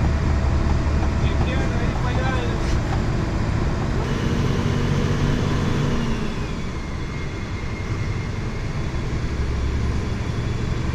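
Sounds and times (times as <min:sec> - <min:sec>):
bus engine running: 0:00.0 - 0:10.9
road rumble: 0:00.0 - 0:10.9.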